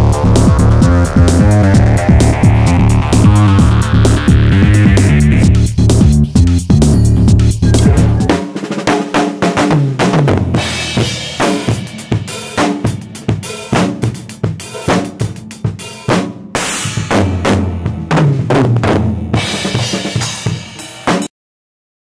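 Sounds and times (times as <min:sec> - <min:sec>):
drum kit hits: 0:00.0 - 0:21.3
cymbal crashes: 0:15.9 - 0:17.8.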